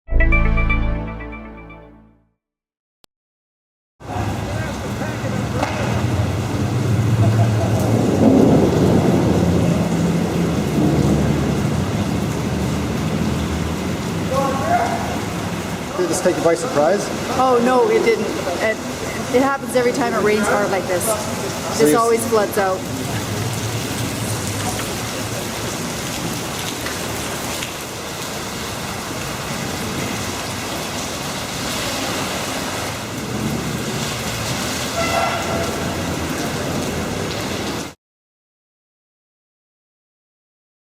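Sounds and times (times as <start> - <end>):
heavy rain pouring: 4.0 - 38.0
low thunder rumble: 6.2 - 13.8.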